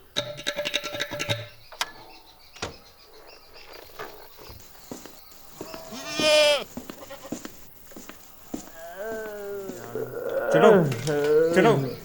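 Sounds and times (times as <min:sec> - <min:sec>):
faint clicks and chirps: 0:00.0 - 0:12.0
goat bleating: 0:05.6 - 0:07.5, 0:08.7 - 0:12.0.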